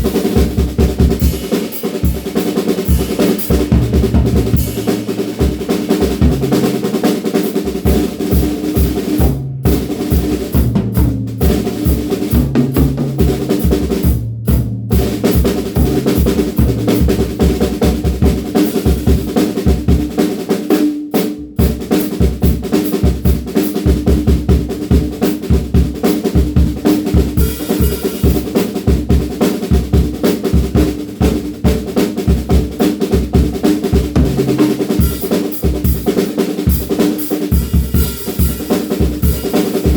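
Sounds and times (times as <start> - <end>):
snare and tom hits: 0.0 - 14.1, 26.1 - 28.8, 32.0 - 39.9
drum kit playing fast groove: 0.0 - 39.9
rapid bass drum strokes: 0.0 - 39.9.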